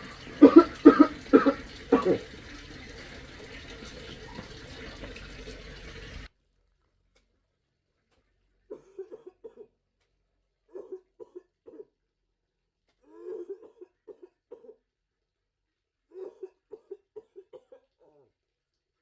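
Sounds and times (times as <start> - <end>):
man coughing: 0.4 - 2.3, 8.7 - 9.7.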